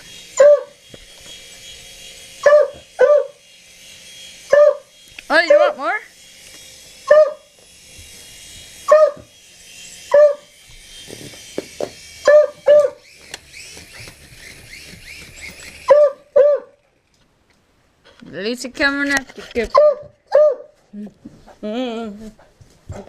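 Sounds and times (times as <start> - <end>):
faint high whir: 0.0 - 17.2
dog barking: 0.4 - 0.8, 2.4 - 3.4, 4.5 - 4.8, 7.1 - 7.4, 8.9 - 9.2, 10.1 - 10.5, 12.3 - 13.0, 15.9 - 16.7, 19.7 - 20.8.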